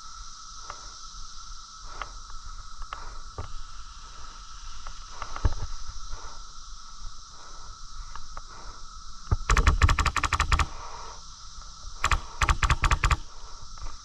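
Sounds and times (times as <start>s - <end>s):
airsoft rifle firing bursts: 9.5s - 10.8s, 12.0s - 13.3s.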